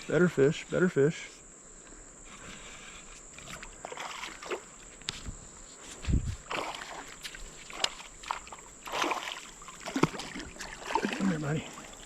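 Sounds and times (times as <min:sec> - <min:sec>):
water splashing and sloshing: 0:03.4 - 0:05.3, 0:06.0 - 0:12.0.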